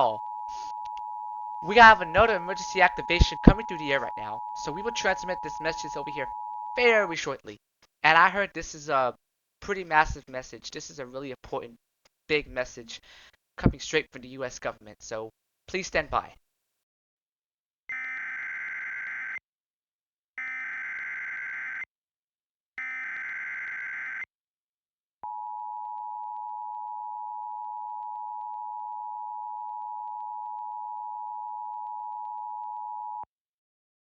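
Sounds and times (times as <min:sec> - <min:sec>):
digital data tones: 0:00.0 - 0:07.2
steady two-tone alarm: 0:00.0 - 0:07.2.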